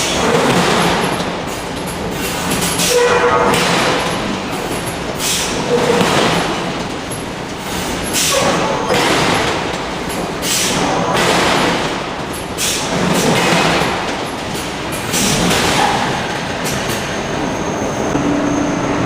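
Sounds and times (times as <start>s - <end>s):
forge shop din: 0.0s - 17.0s
forging hammer striking steel: 2.5s - 6.7s.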